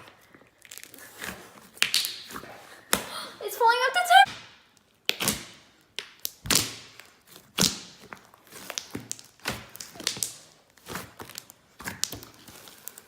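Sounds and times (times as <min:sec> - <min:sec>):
slime slapping and popping: 0:01.7 - 0:03.1, 0:04.3 - 0:12.8.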